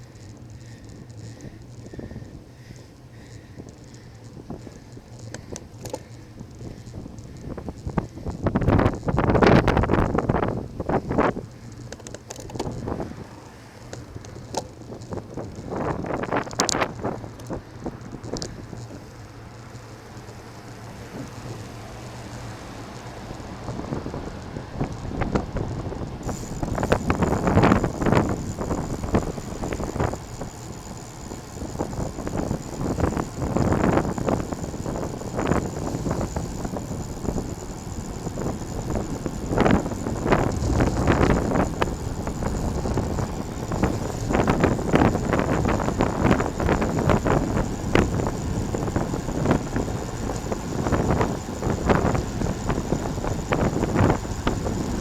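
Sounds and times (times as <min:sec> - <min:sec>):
wind buffeting microphone: 0:00.0 - 0:19.6, 0:20.8 - 0:55.0
thin high whine: 0:26.1 - 0:55.0.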